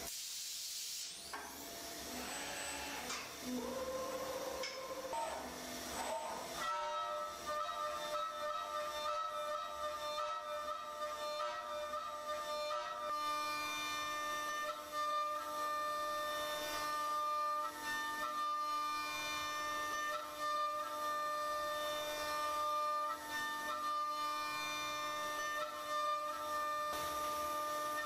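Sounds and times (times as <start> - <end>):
slow woodwind melody: 6.0 - 28.0.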